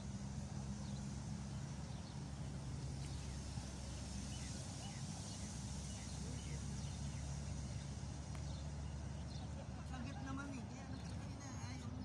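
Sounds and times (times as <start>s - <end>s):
low motor hum: 0.0s - 12.0s.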